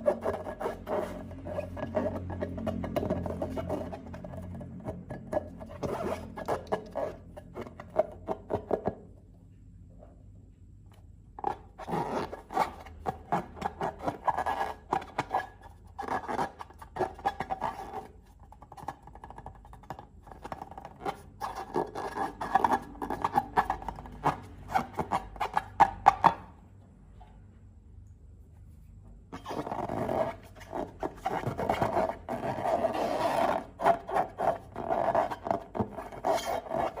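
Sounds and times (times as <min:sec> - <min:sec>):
slime crackling and scraping: 0:29.4 - 0:37.0.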